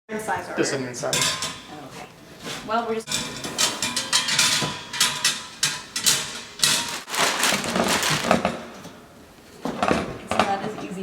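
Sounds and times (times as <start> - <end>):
hard furniture pieces knocking: 3.1 - 10.6.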